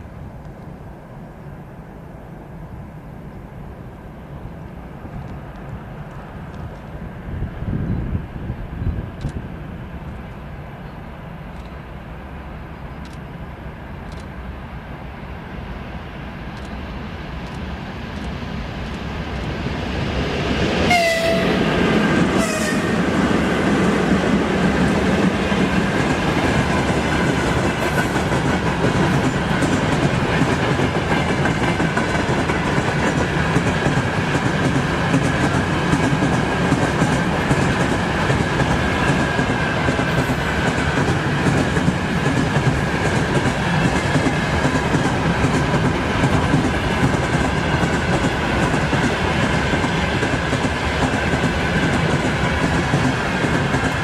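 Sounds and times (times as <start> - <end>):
train wheels clattering on rails: 17.4 - 54.0
train horn blasts: 20.9 - 23.1, 27.7 - 28.3.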